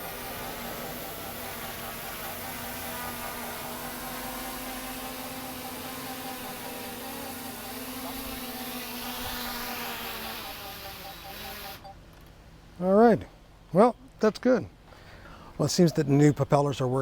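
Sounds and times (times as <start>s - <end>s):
drone propellers buzzing whine: 0.0s - 12.0s.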